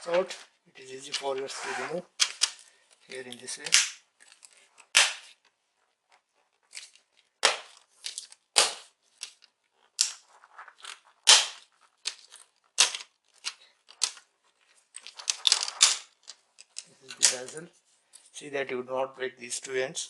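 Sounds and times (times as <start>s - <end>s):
plastic clips snapping: 3.3s - 5.4s.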